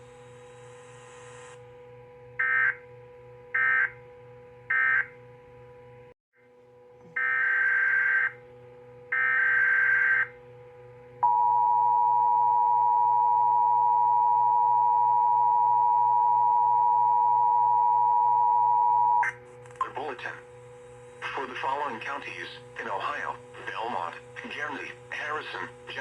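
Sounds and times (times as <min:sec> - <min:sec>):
two-tone attention signal: 0:11.2 - 0:19.3.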